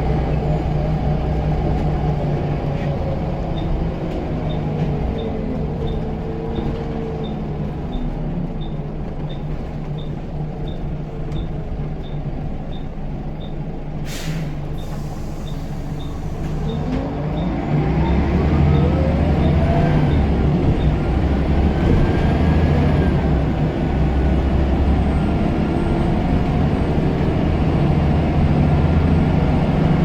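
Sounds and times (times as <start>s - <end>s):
bus engine: 0.0s - 30.0s
air brake hiss: 14.0s - 16.8s.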